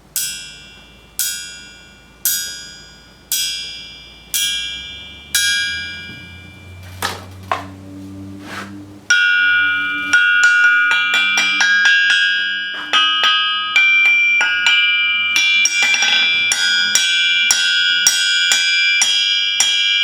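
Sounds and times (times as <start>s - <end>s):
hammer striking ringing anvil: 0.0s - 7.8s, 9.1s - 20.0s.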